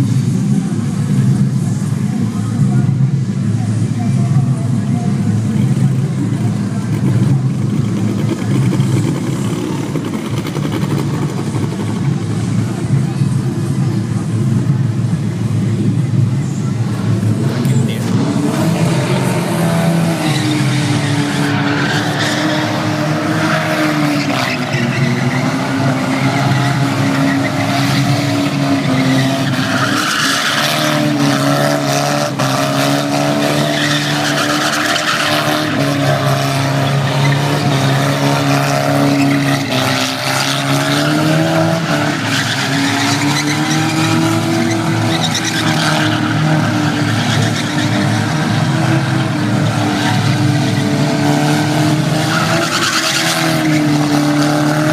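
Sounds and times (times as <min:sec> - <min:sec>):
car engine revving high: 0:00.0 - 0:54.9
tyres screeching: 0:17.4 - 0:54.9.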